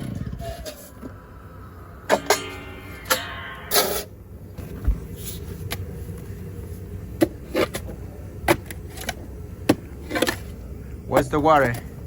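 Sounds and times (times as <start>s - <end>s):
metal tool striking ground: 2.1s - 4.2s.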